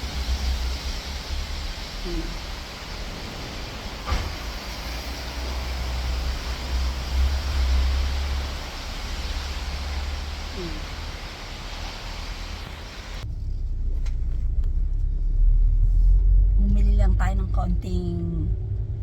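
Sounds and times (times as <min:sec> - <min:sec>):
loud rushing road noise: 0:00.0 - 0:16.6
car cabin low rumble: 0:01.8 - 0:02.9, 0:12.6 - 0:19.0.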